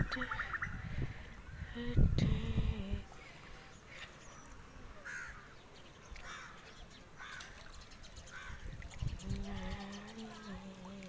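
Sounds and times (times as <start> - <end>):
crows cawing: 5.0 - 5.5, 6.2 - 6.6, 7.2 - 7.6.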